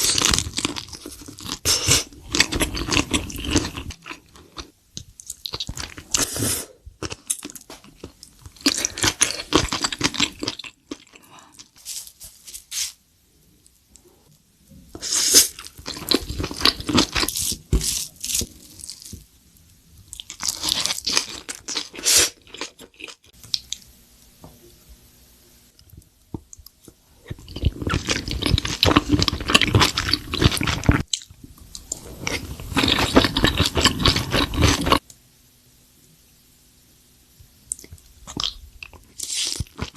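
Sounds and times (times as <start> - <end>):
chewing crunchy food: 0.0 - 6.3, 7.0 - 12.1, 15.0 - 19.2, 20.1 - 23.8, 25.8 - 35.0, 37.7 - 39.9.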